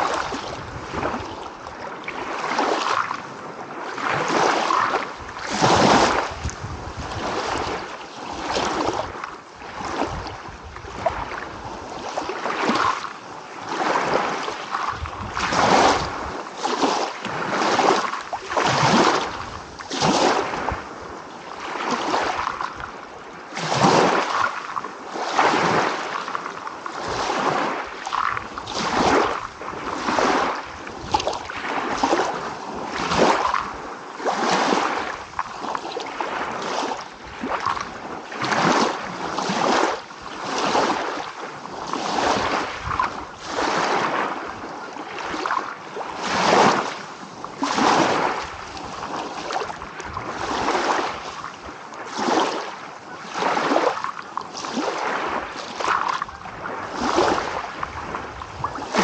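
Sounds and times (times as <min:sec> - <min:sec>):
waves washing onto beach: 0:00.0 - 0:59.0.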